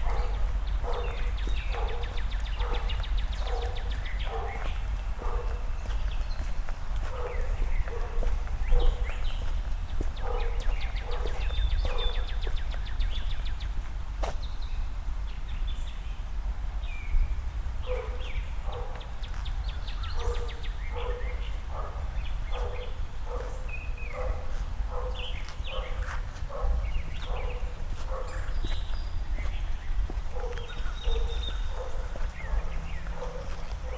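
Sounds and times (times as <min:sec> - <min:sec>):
footsteps on pavement: 0:00.0 - 0:14.6, 0:18.7 - 0:33.9.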